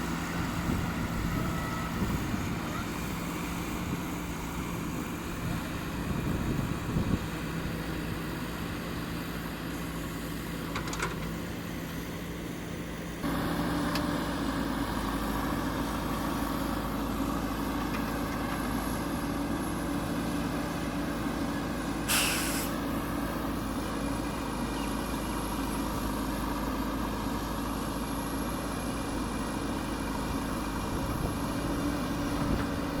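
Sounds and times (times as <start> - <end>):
diesel engine running: 0.0 - 33.0
short sharp hiss: 22.1 - 22.8.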